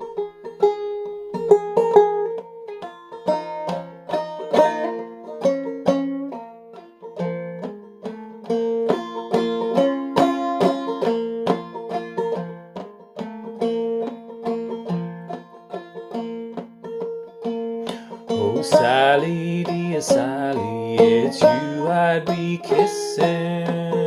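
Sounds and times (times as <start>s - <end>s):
banjo played clawhammer style: 0.0s - 24.0s.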